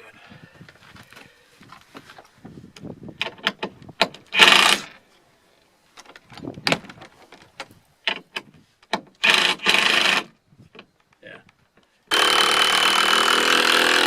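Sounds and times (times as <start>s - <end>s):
tool handling clicks and knocks: 2.8s - 4.4s, 5.9s - 9.3s
power drill driving screws into wood: 3.4s - 5.0s, 9.2s - 10.3s, 12.1s - 14.0s.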